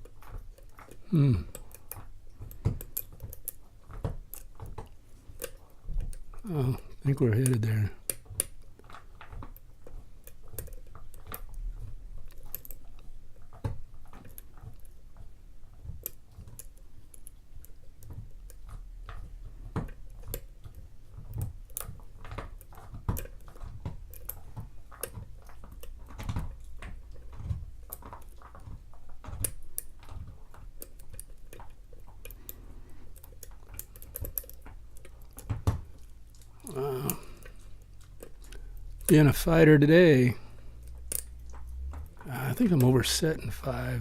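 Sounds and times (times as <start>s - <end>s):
lock pick clicking and scraping: 0.0s - 11.6s, 16.0s - 39.2s.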